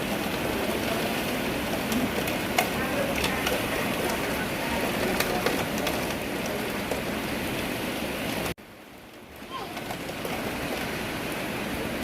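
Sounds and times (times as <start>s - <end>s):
sharp drips: 0.0s - 8.5s
heavy rain falling: 0.0s - 12.0s.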